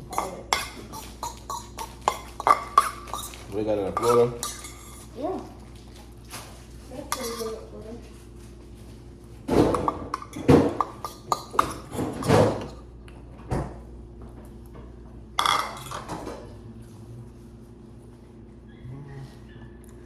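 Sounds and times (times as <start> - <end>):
dishes and cutlery clinking: 0.0 - 5.2, 6.3 - 7.6, 9.4 - 12.8, 15.4 - 16.6.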